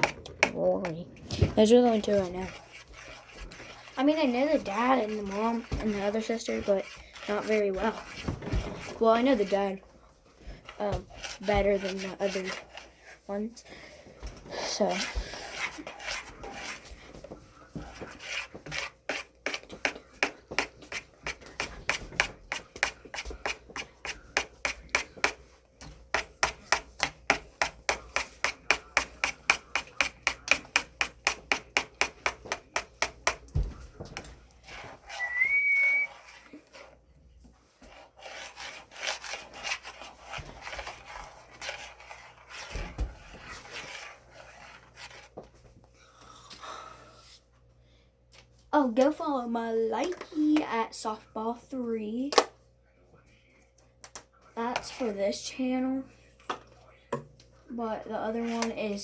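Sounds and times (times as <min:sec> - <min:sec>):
rubbing or scraping strokes: 0:00.0 - 0:09.7, 0:10.5 - 0:13.0, 0:14.6 - 0:19.6, 0:34.6 - 0:37.0, 0:37.8 - 0:45.4
high whistle-like tone: 0:35.1 - 0:36.2.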